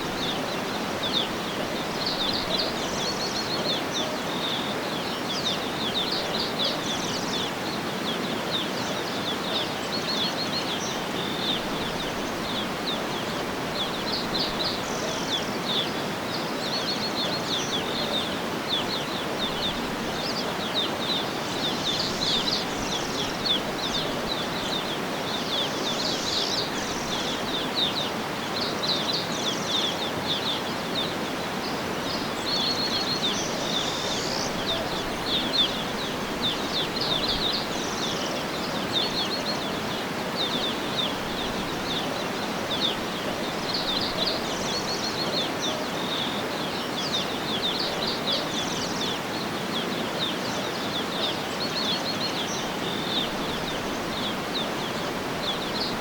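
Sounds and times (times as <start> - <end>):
birds chirping: 0.0 - 56.0
steady background hiss: 0.0 - 56.0.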